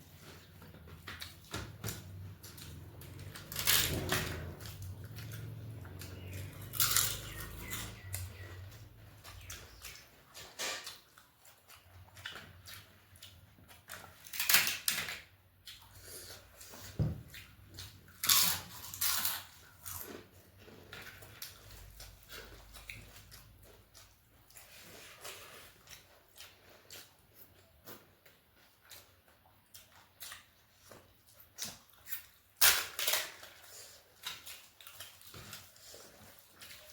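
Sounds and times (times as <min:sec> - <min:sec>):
wet chewing and smacking: 0:00.0 - 0:14.6, 0:15.4 - 0:36.9
crisp crunching bites: 0:06.3 - 0:08.2.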